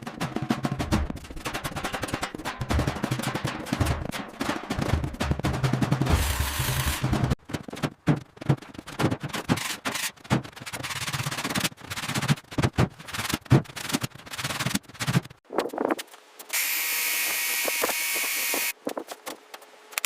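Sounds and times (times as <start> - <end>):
scraping and rubbing: 6.0 - 16.2.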